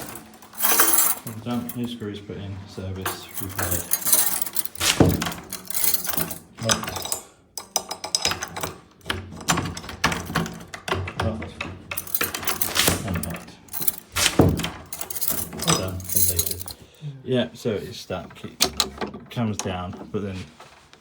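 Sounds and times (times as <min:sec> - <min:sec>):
door lock clicking and clattering: 0:00.0 - 0:01.2, 0:03.2 - 0:16.8, 0:18.3 - 0:20.1.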